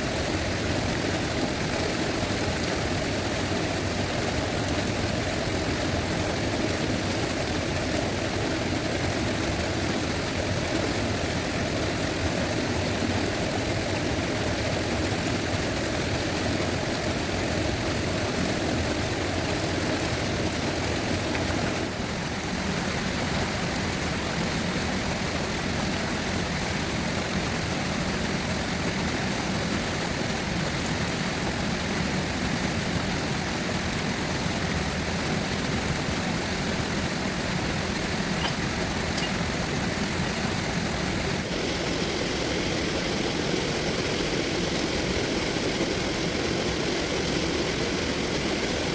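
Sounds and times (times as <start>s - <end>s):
river water rushing: 0.0s - 48.9s.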